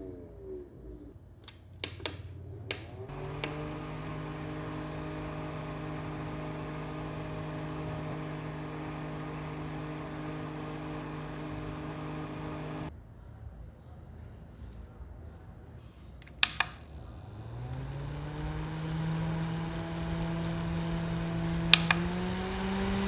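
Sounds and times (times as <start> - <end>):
switch click: 1.8 - 12.9, 16.2 - 16.8, 21.7 - 22.4
humidifier fan humming: 2.9 - 12.9, 16.4 - 23.0.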